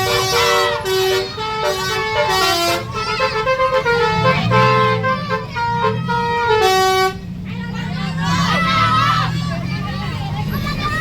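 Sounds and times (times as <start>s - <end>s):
musical bus horn playing tune: 0.0s - 7.4s.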